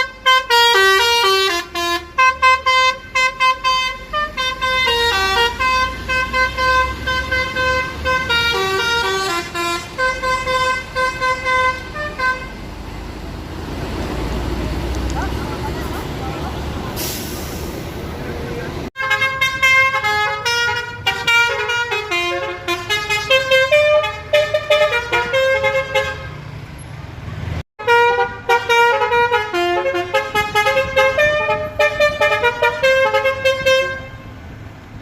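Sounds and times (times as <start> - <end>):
multi-tone air horn tune: 0.0 - 12.6, 19.0 - 26.4, 27.8 - 34.3.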